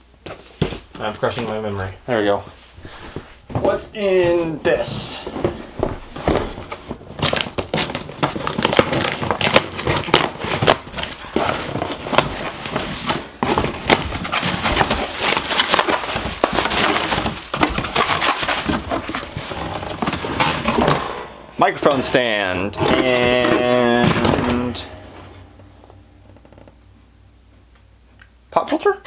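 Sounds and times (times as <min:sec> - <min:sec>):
packaging crinkling and rustling: 0:02.7 - 0:21.2, 0:21.8 - 0:25.6.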